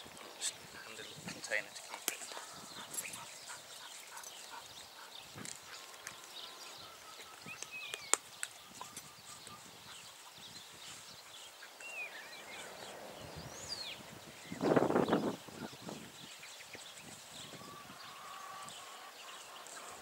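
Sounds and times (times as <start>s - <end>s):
wild birds chirping: 0.0s - 20.0s.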